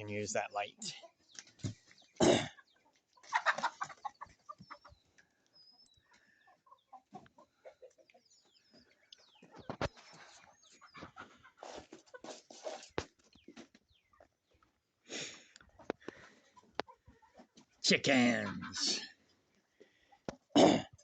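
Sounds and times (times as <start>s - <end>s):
chickens clucking: 0.0s - 21.0s
high chick peeps: 0.9s - 14.7s.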